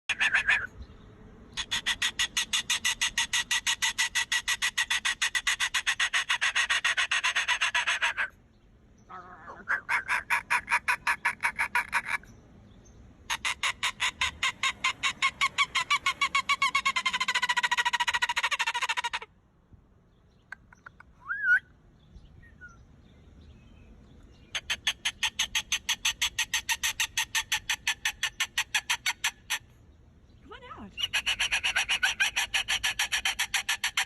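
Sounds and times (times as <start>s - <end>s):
parrot rattling call: 24.5s - 29.7s, 31.0s - 34.0s.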